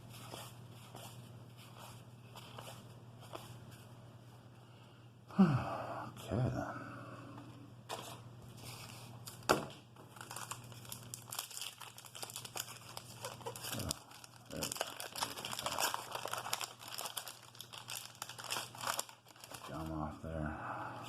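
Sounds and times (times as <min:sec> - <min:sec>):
paper pack crinkling and tearing: 0:10.1 - 0:20.0.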